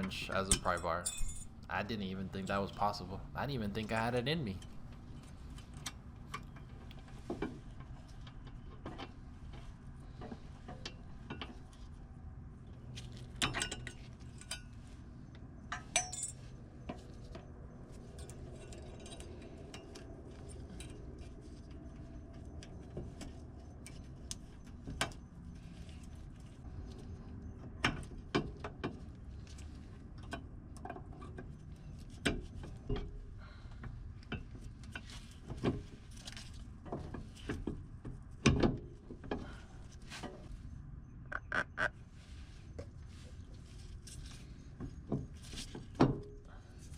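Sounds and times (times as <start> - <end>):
hand tools clinking on metal: 0.0 - 4.8, 15.7 - 16.5
low steady hum: 0.0 - 46.9.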